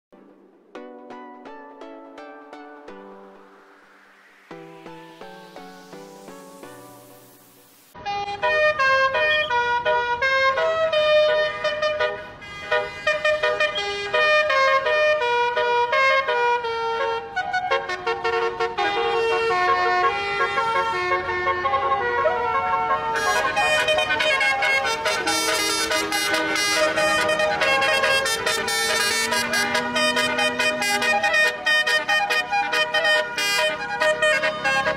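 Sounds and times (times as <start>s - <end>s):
bus air horn playing a tune: 8.0s - 34.9s.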